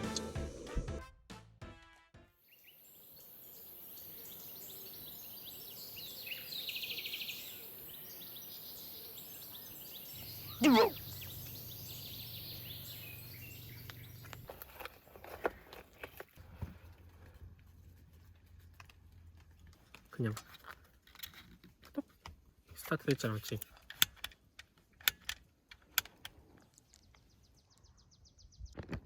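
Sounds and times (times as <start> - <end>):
rapid bird trill: 2.5 - 14.5
birds calling: 2.5 - 16.3.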